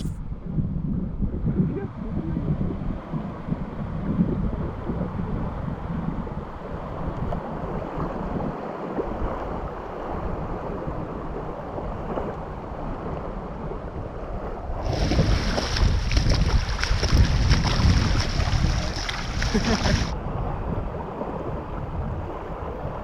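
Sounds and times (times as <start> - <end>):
wind buffeting microphone: 0.0 - 23.0
surf washing: 6.6 - 23.0.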